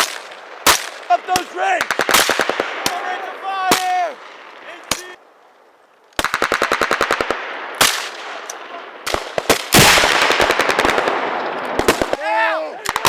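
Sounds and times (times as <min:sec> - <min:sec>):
person shouting: 0:02.9 - 0:05.2, 0:12.1 - 0:13.0
single gunshots: 0:06.2 - 0:12.2
machine-gun burst: 0:09.1 - 0:12.2.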